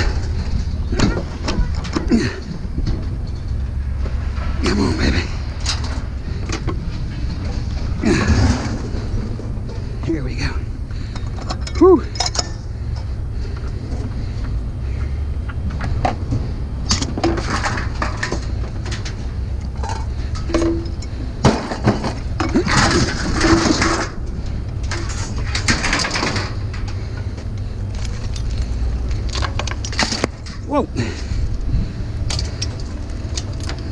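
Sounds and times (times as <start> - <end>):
metal scraping: 0.0 - 33.9
steady low rumble: 0.0 - 33.9
scrap metal clinking and snapping: 4.4 - 9.5, 11.0 - 14.1, 16.8 - 31.4, 32.2 - 33.9.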